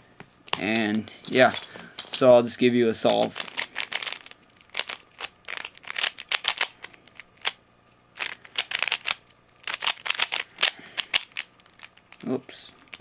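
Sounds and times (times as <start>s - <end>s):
puzzle cube layers clacking: 3.4s - 6.7s, 8.2s - 11.5s.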